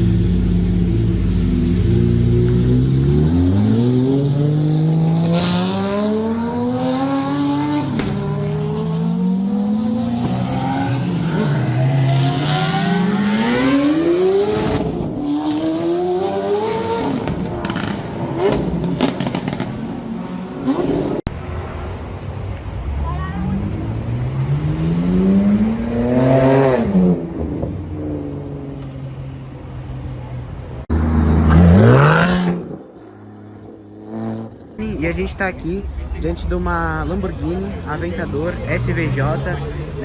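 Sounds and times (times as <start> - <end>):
exhaust cracks: 0.0 - 5.8, 17.0 - 20.1
car engine accelerating hard: 0.0 - 21.2.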